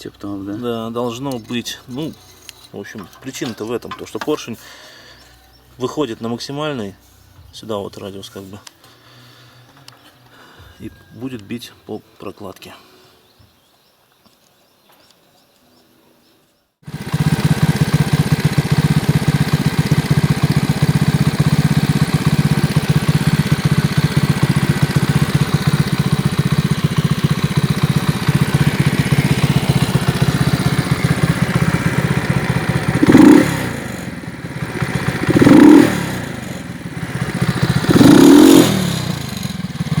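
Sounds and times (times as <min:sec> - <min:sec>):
moped engine idling and revving: 0:16.8 - 0:40.0.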